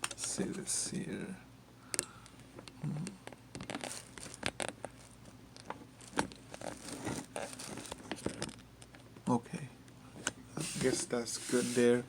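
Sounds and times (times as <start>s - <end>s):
handling noise rustling: 10.5s - 12.0s.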